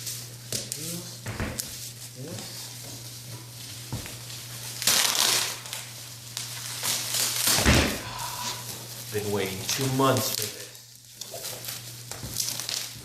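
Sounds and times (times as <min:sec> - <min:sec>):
packaging crinkling and rustling: 0:03.2 - 0:13.0.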